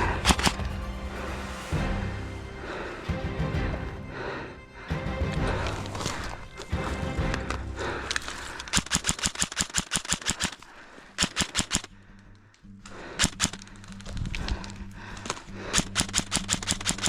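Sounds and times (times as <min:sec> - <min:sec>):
airsoft gun firing bursts: 0:08.7 - 0:11.9, 0:15.8 - 0:17.0.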